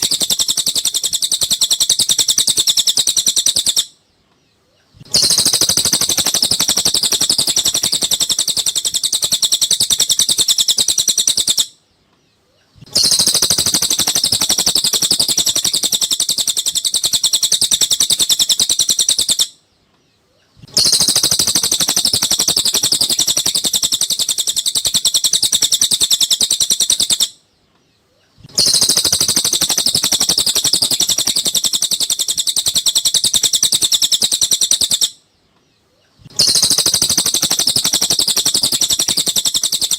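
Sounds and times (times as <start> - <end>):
bird chattering trill: 0.0 - 4.0, 4.8 - 11.8, 12.7 - 19.6, 20.5 - 27.4, 28.4 - 35.2, 36.2 - 39.9.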